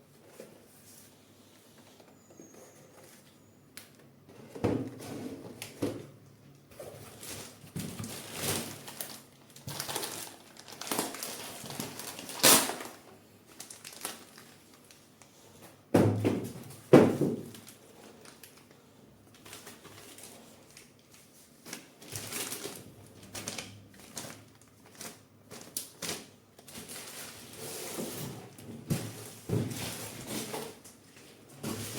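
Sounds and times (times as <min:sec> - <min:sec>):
packaging crinkling and rustling: 0:06.7 - 0:15.8, 0:16.6 - 0:31.9.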